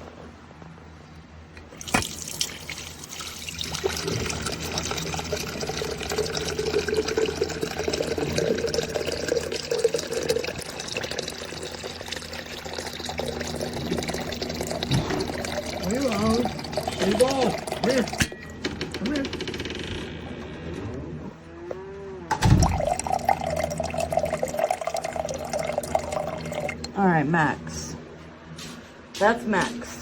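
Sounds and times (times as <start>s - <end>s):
water running into metal pot: 1.7s - 18.4s, 22.6s - 26.9s.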